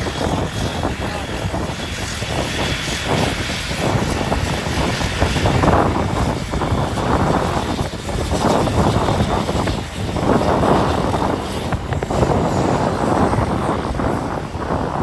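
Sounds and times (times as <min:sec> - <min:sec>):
jet blast buffeting microphone: 0:00.0 - 0:15.0
jet engines roaring: 0:00.0 - 0:15.0.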